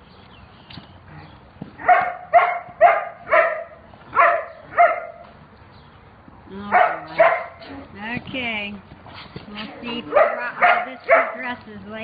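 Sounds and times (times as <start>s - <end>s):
dog barking high-pitched: 1.8s - 5.2s, 6.7s - 7.7s, 10.1s - 11.4s.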